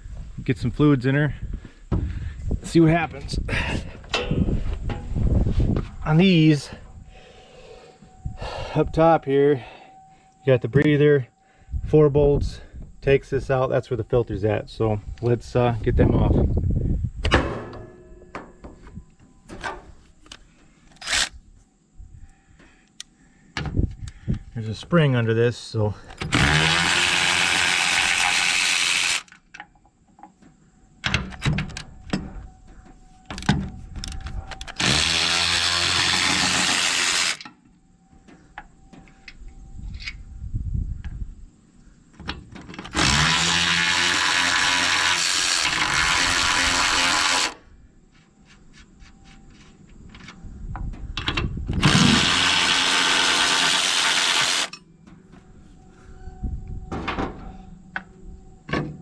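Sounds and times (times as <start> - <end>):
power drill whining: 21.0 - 21.3, 26.2 - 29.3, 34.6 - 37.5, 42.9 - 47.6, 51.8 - 54.8.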